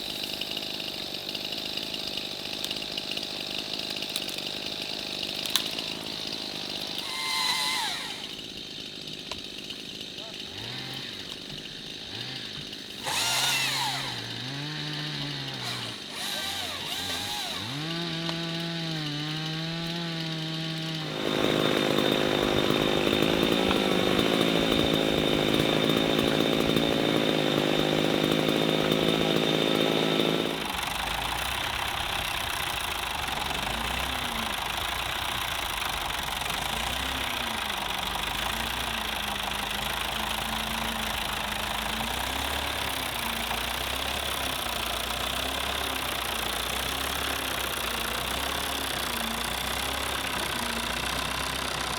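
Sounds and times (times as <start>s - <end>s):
small engine revving: 5.0s - 8.5s, 10.2s - 51.9s.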